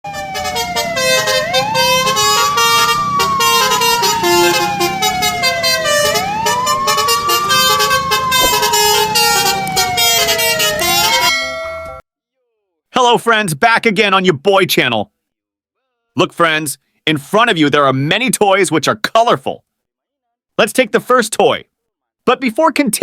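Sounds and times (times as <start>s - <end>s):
emergency siren wailing: 0.0s - 12.0s.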